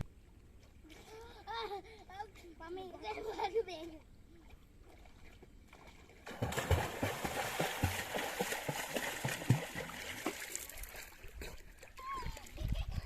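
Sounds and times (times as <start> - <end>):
water splashing: 4.4 - 12.7
dull slaps on water: 6.2 - 11.6.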